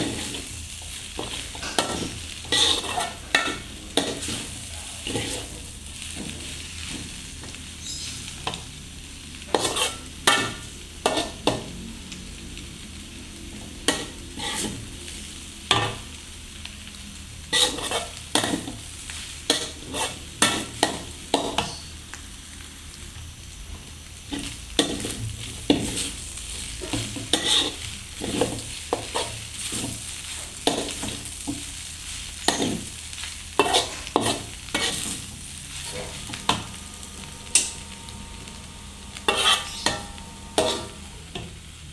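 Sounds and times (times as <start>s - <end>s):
spatula scraping a pan: 0.0s - 8.7s, 9.4s - 11.7s, 13.6s - 16.1s, 17.4s - 21.9s, 24.3s - 41.6s
noodles sizzling in a pan: 0.0s - 41.9s.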